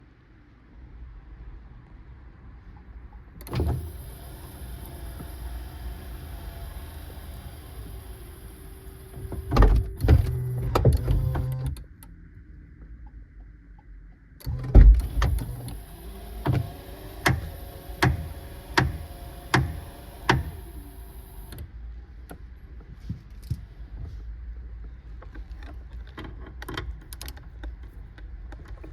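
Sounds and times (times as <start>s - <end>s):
liftgate motor humming: 3.4s - 12.0s, 14.4s - 21.7s.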